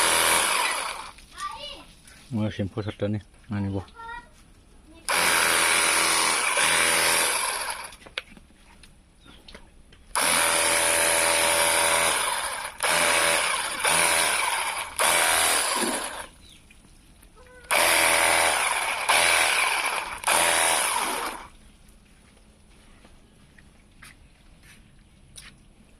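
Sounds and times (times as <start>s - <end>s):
pressure washer motor hum: 0.0s - 1.2s, 5.1s - 8.0s, 10.2s - 16.4s, 17.7s - 21.6s.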